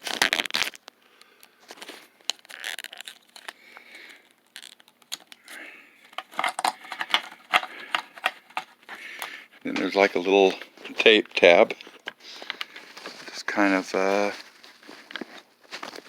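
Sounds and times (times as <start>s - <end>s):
rustling: 11.9s - 16.0s.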